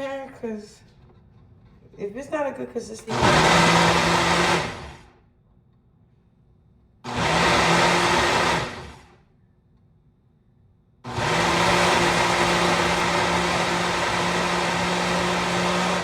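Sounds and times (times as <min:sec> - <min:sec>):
blender running: 0:03.1 - 0:05.1, 0:07.1 - 0:09.2, 0:11.1 - 0:16.0.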